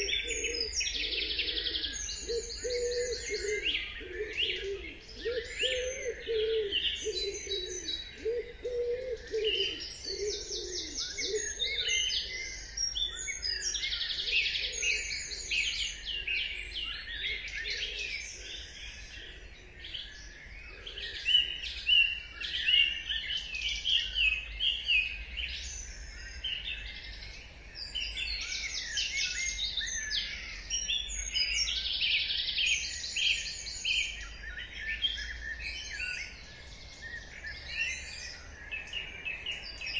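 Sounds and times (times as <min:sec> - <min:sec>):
low cooing: 0:00.0 - 0:11.8
songbirds singing: 0:00.0 - 0:39.9.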